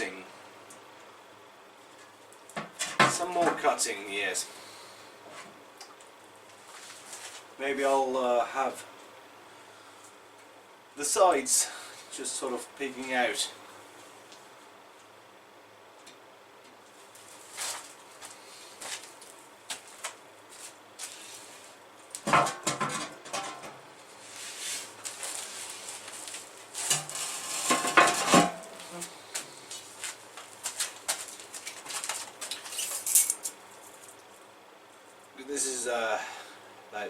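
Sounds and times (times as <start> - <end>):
metal pieces clinking and clattering: 32.7 - 33.5.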